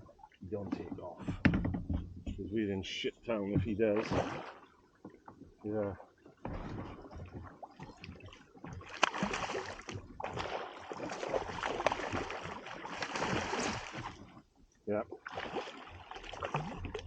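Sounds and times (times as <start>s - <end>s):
water splashing and sloshing: 0.0s - 17.0s
knocks and handling noise: 0.8s - 2.5s.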